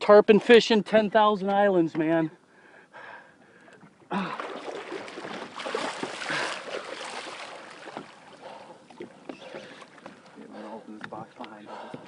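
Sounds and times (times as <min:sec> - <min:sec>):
fish thrashing in water: 0:04.1 - 0:10.1.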